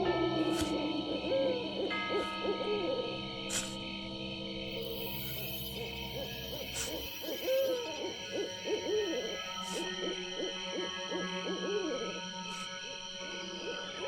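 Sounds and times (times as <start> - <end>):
owl hooting: 5.4 - 12.7.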